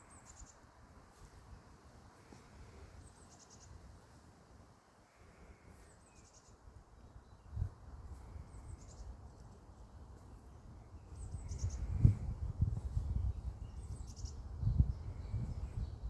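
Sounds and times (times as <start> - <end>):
wind buffeting microphone: 10.8 - 16.0.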